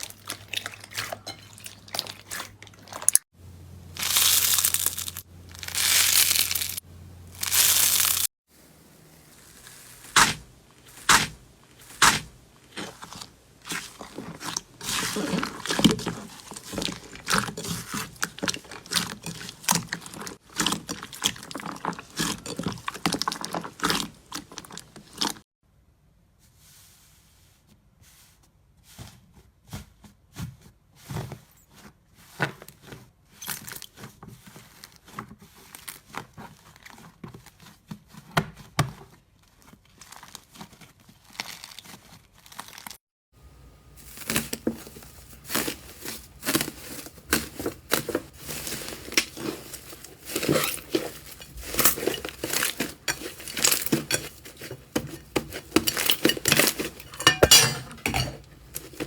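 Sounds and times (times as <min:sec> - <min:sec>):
slime crackling and popping: 0:04.0 - 0:06.8, 0:07.4 - 0:08.3, 0:09.3 - 0:25.3.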